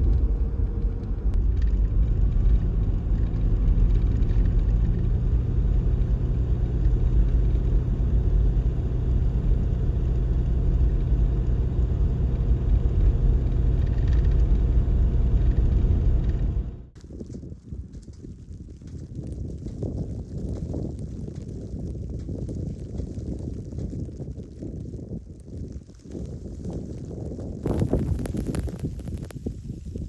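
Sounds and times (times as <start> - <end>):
vehicle engine and road noise: 0.0 - 17.0, 27.6 - 30.0.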